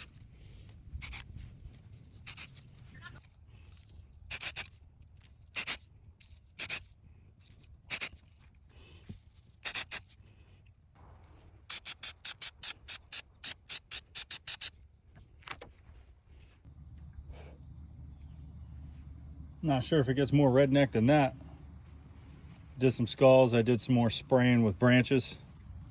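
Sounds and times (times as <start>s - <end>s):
spray can hissing bursts: 1.0s - 1.2s, 2.3s - 2.6s, 4.3s - 4.7s, 5.6s - 5.8s, 6.6s - 6.9s, 7.9s - 8.2s, 9.6s - 10.1s, 11.6s - 14.8s.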